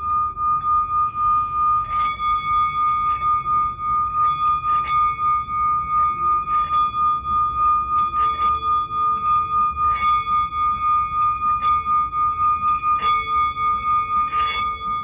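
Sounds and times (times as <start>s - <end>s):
singing bowl ringing: 0.0s - 15.0s.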